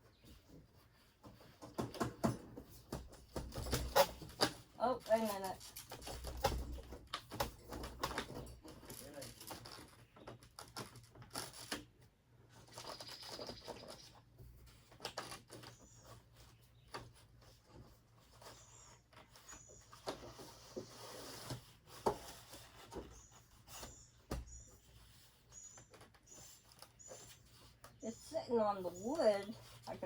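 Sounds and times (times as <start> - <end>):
knocks taps and scrapes: 0.0 - 30.0.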